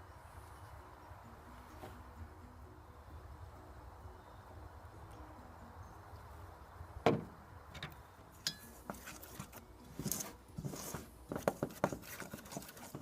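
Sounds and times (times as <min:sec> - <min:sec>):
utensils and dishes clinking: 0:08.4 - 0:10.3.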